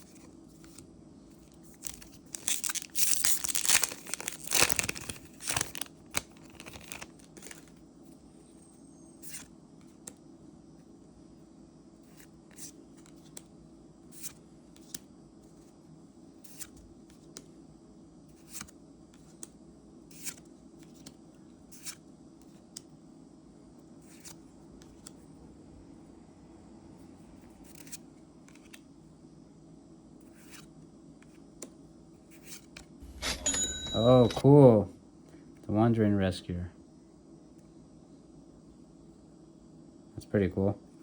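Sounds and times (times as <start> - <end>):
steady low hum: 20.6 - 32.3.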